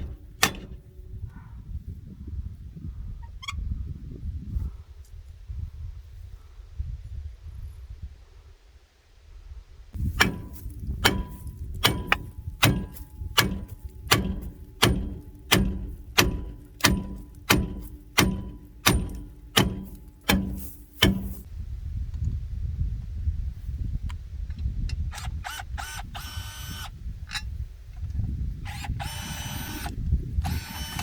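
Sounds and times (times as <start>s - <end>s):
sharp knocks: 0.0s - 1.0s, 10.0s - 21.5s.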